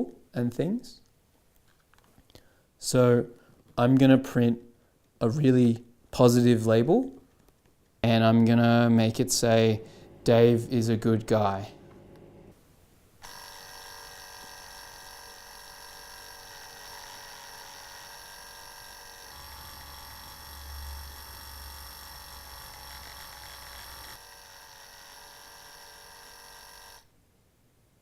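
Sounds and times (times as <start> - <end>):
deeper hum: 9.6 - 12.5
label maker motor whirring: 9.8 - 12.5, 13.2 - 27.1.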